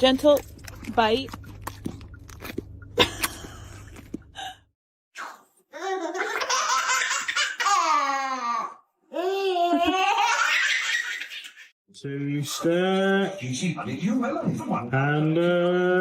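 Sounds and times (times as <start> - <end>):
high-pitched laughter: 5.8 - 11.7.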